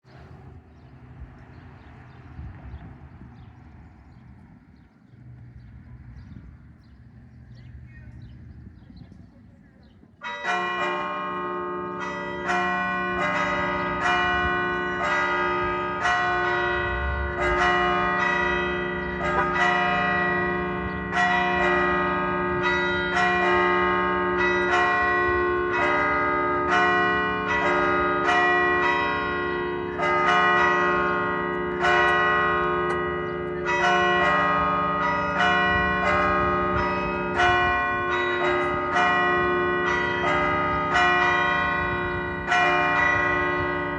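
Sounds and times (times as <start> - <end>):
church bells pealing: 10.2 - 43.9.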